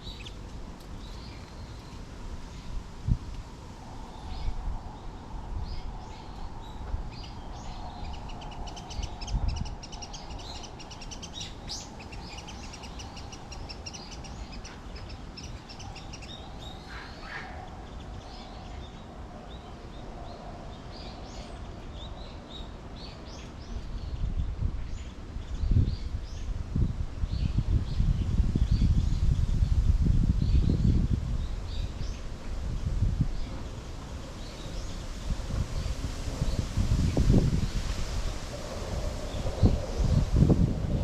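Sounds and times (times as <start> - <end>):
birds chirping and calling: 6.1 - 19.0.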